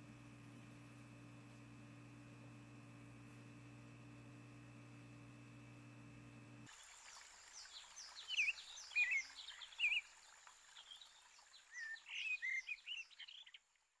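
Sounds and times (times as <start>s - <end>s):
birds chirping: 7.4s - 13.7s.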